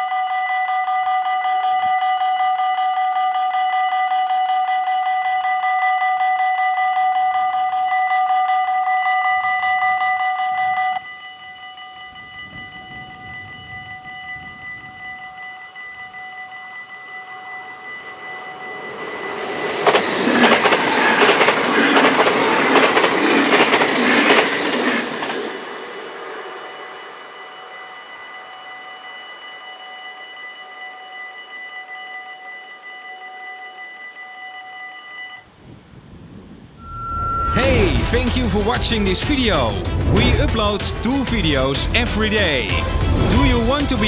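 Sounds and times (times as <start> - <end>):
level crossing warning bells: 0.0 - 25.3, 26.3 - 35.5, 36.8 - 44.0
train passing: 0.0 - 34.1, 35.4 - 44.0
train wheels clattering over rails: 19.5 - 25.6.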